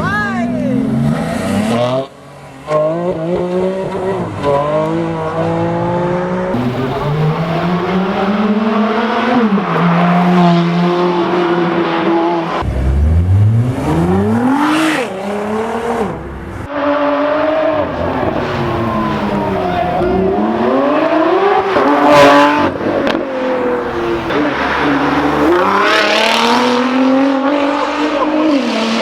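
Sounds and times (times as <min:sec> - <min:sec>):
supercar engines revving: 0:02.8 - 0:29.0.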